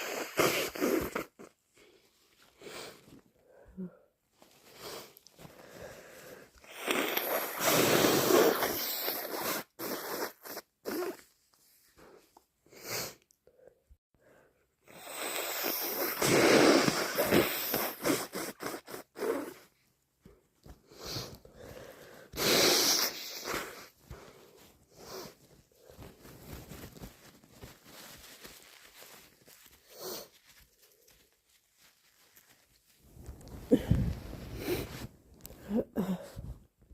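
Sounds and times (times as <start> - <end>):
person blowing nose: 0.0 - 1.9, 4.7 - 11.4, 12.0 - 13.2, 14.9 - 19.8, 20.8 - 31.0, 33.5 - 36.6.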